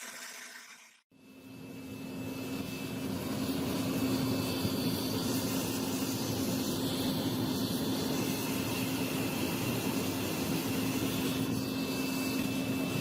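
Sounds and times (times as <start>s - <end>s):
power tool whirring: 0.0s - 1.0s.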